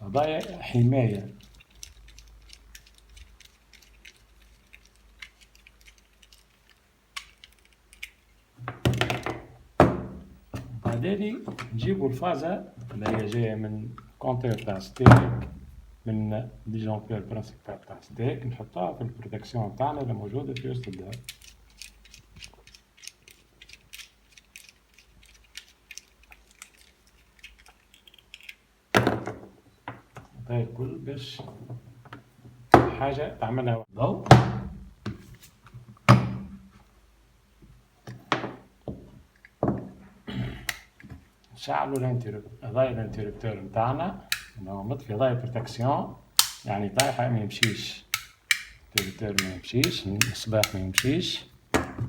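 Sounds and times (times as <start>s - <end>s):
clicks of wires being handled: 0.2s - 9.5s, 19.8s - 28.6s, 44.2s - 44.6s, 45.8s - 52.0s
clicks of hand work on electrical parts: 44.2s - 44.6s, 46.4s - 52.0s.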